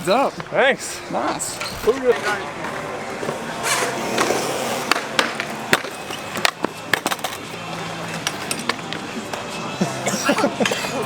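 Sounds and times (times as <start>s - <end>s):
wheels rolling over concrete: 1.3s - 9.6s
wheels and metal clacking: 1.4s - 9.6s.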